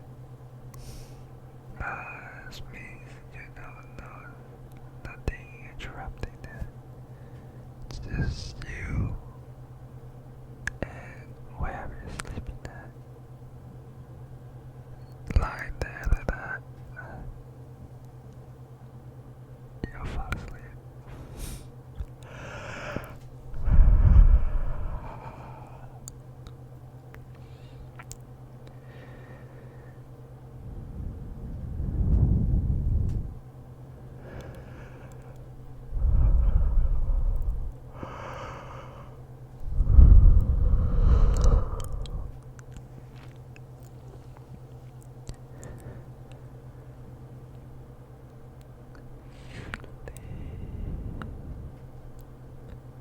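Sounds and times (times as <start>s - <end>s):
mouth clicks and lip smacks: 26.0s - 28.8s, 41.1s - 46.4s.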